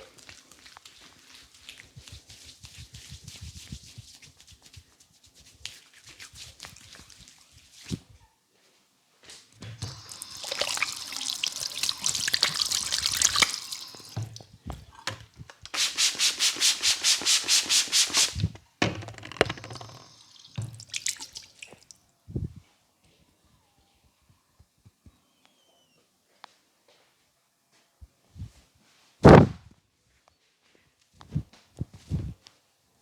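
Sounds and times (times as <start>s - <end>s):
hands rubbing over hair: 0.9s - 8.1s, 9.8s - 14.5s, 15.5s - 18.6s.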